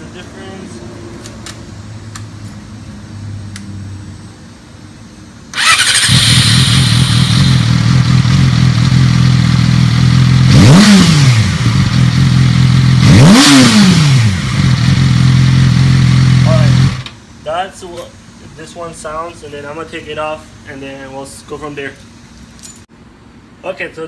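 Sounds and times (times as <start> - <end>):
starter motor whir: 5.5 - 8.0
motorcycle engine revving: 5.5 - 17.2
motorcycle engine idling: 5.6 - 13.1, 14.4 - 17.2.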